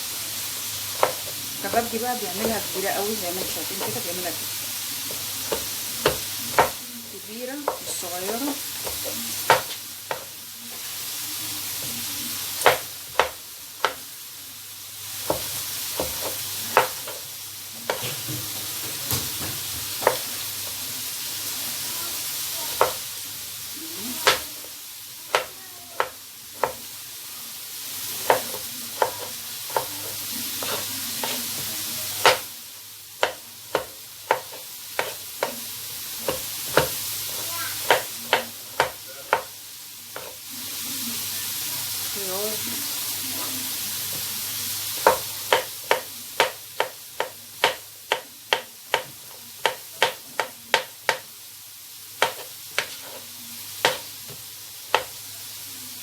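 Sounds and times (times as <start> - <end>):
meat sizzling: 0.0 - 56.0
knife tapping cutting board: 0.9 - 4.2, 5.0 - 6.8, 7.6 - 10.9, 11.8 - 14.0, 15.2 - 17.3, 17.9 - 20.8, 22.7 - 23.0, 24.2 - 24.7, 25.3 - 26.9, 28.2 - 32.5, 33.2 - 39.6, 40.2 - 40.4, 44.9 - 51.3, 52.2 - 55.2.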